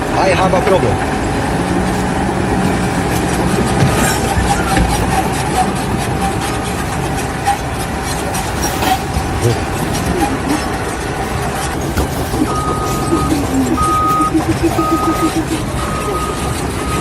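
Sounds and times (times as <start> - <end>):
large machine rumbling and whining: 0.0 - 17.0.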